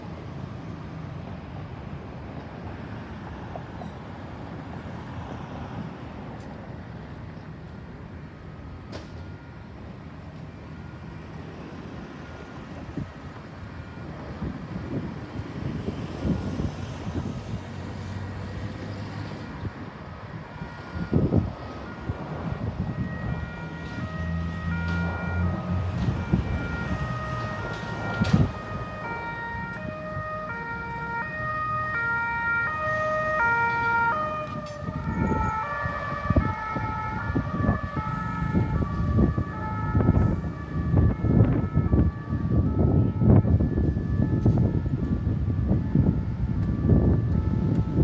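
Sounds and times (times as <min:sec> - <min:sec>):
vehicles passing: 0:10.4 - 0:48.0.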